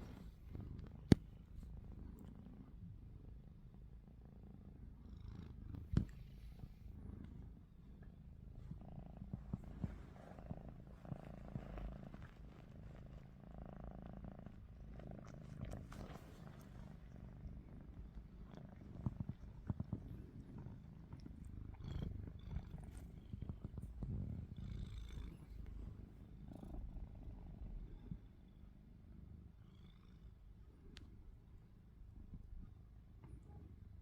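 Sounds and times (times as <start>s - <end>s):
cat purring: 0.0s - 34.0s.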